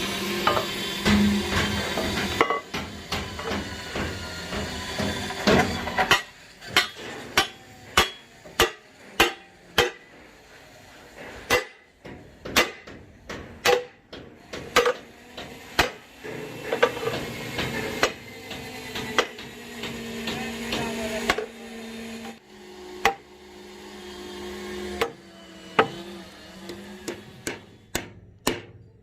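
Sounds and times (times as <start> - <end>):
hammer striking metal: 0.4 - 10.2, 11.3 - 21.6, 26.6 - 29.0.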